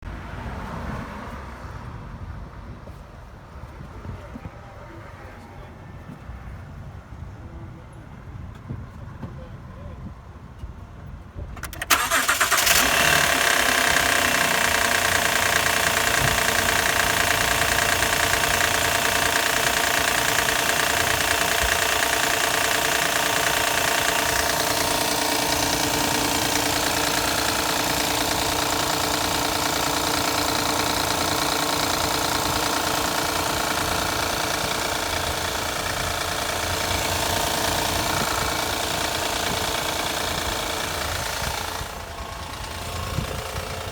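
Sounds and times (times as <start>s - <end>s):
car engine starting and idling: 11.6s - 43.9s.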